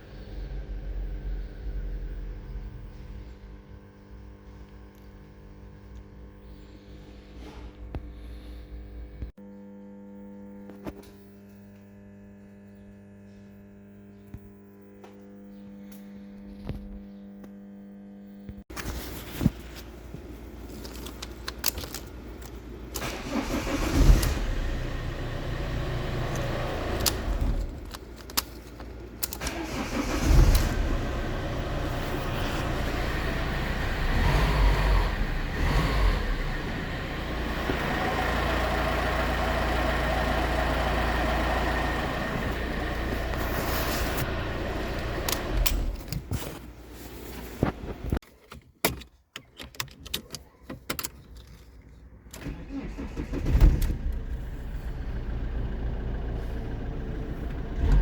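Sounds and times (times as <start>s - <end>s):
car engine cranking and starting: 22.9s - 46.6s, 50.9s - 58.0s
car engine idling: 23.0s - 46.1s, 54.0s - 58.0s
key rattling in ignition: 49.0s - 54.5s.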